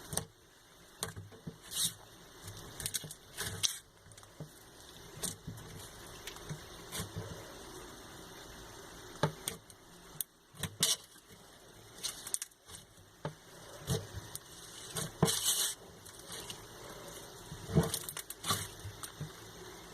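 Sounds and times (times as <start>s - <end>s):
slime squelching: 11.9s - 19.4s.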